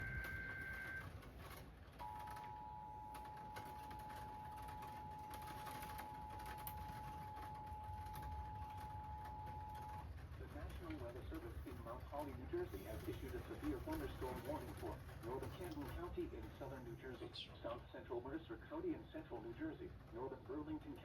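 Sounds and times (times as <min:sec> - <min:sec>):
two-tone alert signal: 0:00.0 - 0:01.0.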